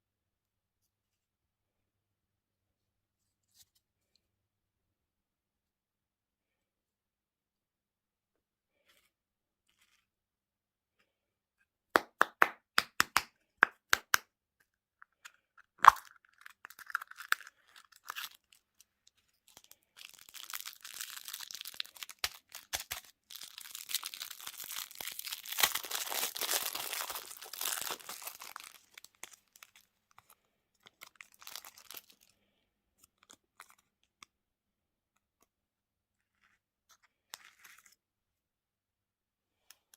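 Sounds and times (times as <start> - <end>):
candy crinkling and crunching: 15.1 - 34.2.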